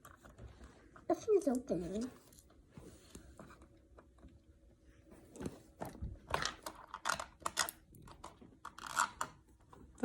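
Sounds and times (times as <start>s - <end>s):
plastic toy packaging clicks and crinkles: 6.2s - 9.4s.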